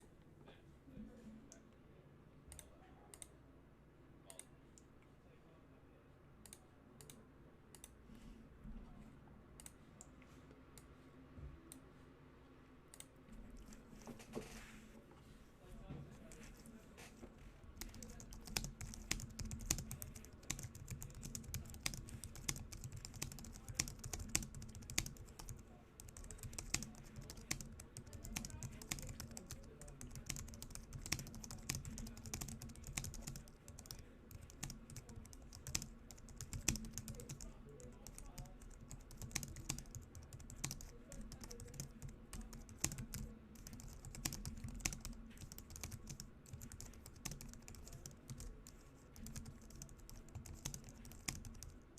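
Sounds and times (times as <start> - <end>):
fast typing on a keyboard: 17.8 - 51.8.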